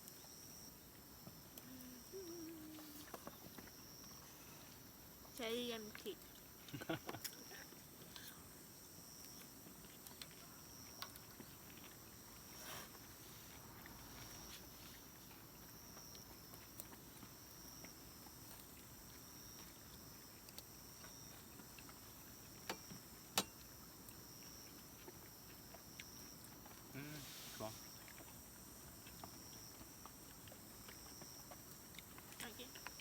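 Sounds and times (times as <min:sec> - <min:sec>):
insect chirping: 0:00.0 - 0:33.0
low hiss: 0:01.5 - 0:03.3, 0:26.8 - 0:28.1.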